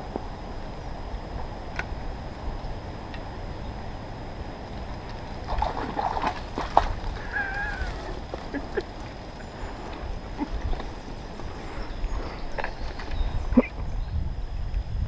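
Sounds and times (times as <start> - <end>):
river water rushing: 0.0 - 13.8
wind rumble on microphone: 0.0 - 15.0.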